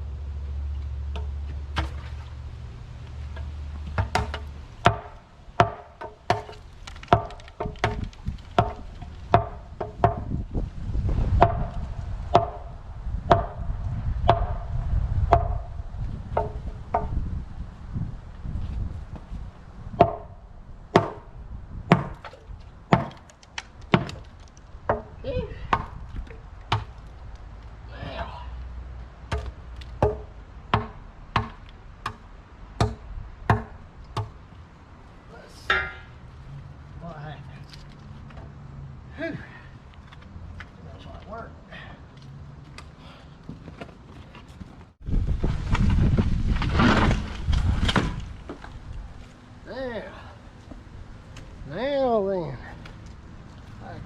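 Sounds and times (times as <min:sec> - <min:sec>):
hammer striking concrete: 0:03.9 - 0:10.3, 0:11.4 - 0:12.7, 0:13.3 - 0:13.6, 0:14.3 - 0:14.6, 0:21.0 - 0:21.3, 0:22.9 - 0:23.3, 0:29.3 - 0:32.2, 0:32.8 - 0:34.4, 0:35.7 - 0:36.1
low rumble: 0:09.0 - 0:22.0.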